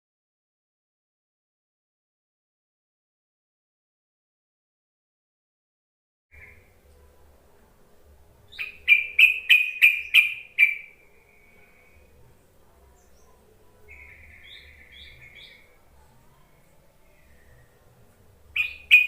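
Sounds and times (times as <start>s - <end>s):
bird chattering: 8.6s - 11.0s, 18.6s - 19.0s.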